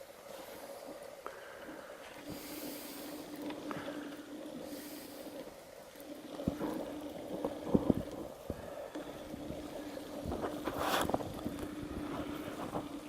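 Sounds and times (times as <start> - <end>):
outboard motor humming: 0.0 - 13.0.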